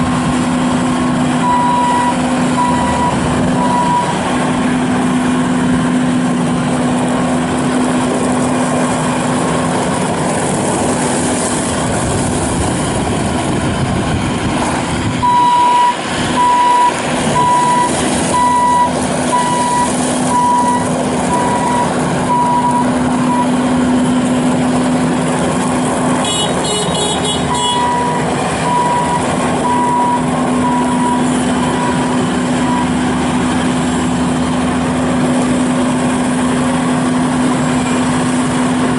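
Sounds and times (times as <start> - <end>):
diesel engine running: 0.0 - 38.9
backup alarm beeping: 1.4 - 4.2, 15.2 - 23.6, 27.5 - 33.0.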